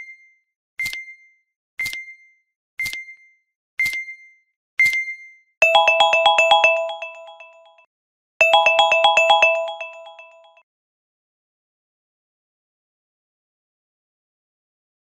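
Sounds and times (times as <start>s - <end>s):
timer tick-beep: 0.8s - 1.1s, 1.8s - 2.2s, 2.8s - 3.2s, 3.8s - 4.2s, 4.8s - 7.8s, 8.4s - 10.6s
electronic alarm chime notes: 5.6s - 7.8s, 8.4s - 10.6s.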